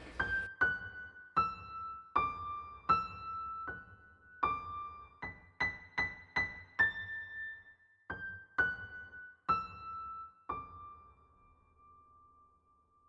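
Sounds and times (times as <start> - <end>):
slow piano melody: 0.0 - 7.5.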